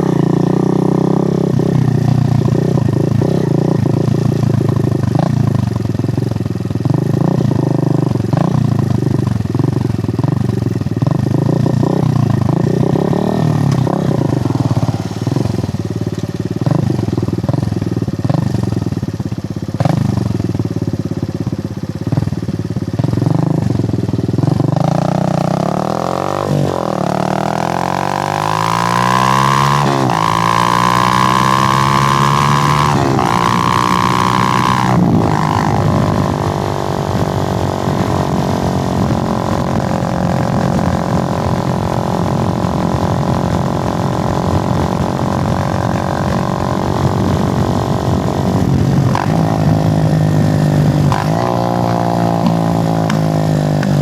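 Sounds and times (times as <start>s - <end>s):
motorcycle engine revving through gears: 0.0s - 54.0s.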